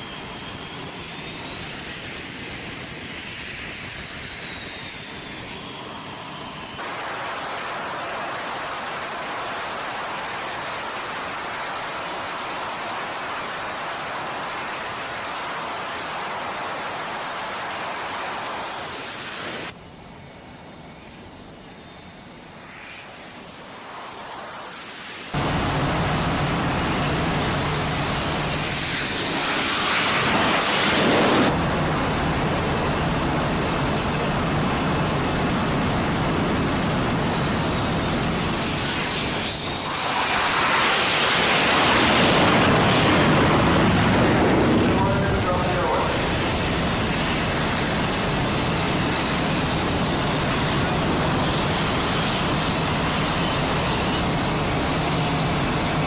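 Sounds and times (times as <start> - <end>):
jet engines roaring: 0.0 - 56.0
turbine whine: 0.0 - 56.0.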